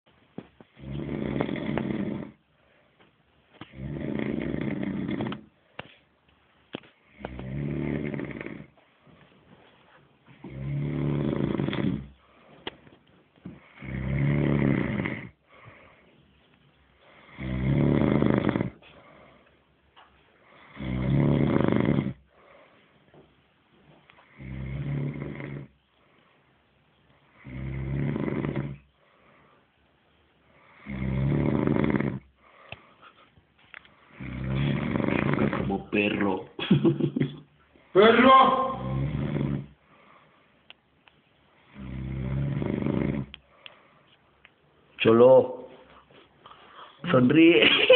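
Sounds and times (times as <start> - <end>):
man snoring: 0.8 - 2.4, 3.7 - 5.5, 7.1 - 8.8, 10.4 - 12.2, 13.6 - 15.4, 17.1 - 18.8, 20.6 - 22.3, 24.2 - 25.7, 27.3 - 28.9, 30.6 - 32.3, 34.1 - 36.3, 38.2 - 39.8, 41.7 - 43.4.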